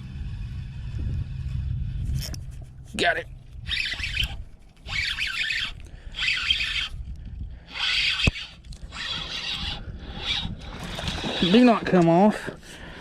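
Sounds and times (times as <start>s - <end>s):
rough rasping scrapes: 3.6s - 7.0s.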